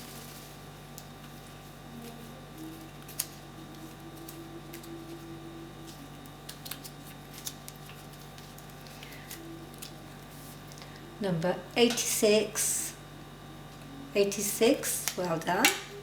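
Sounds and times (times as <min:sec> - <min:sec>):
steady low hum: 0:00.0 - 0:16.0
cards clicking while shuffled: 0:03.0 - 0:05.2, 0:05.8 - 0:10.0.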